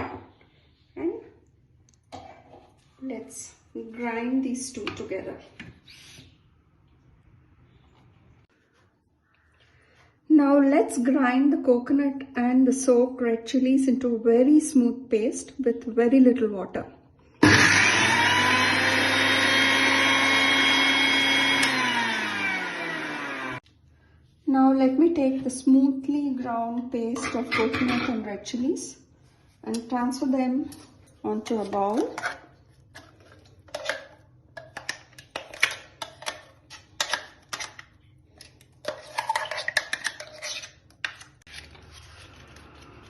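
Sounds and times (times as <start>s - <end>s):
mixer grinder motor whining: 17.4s - 23.6s
spoon scraping jar: 38.4s - 41.4s.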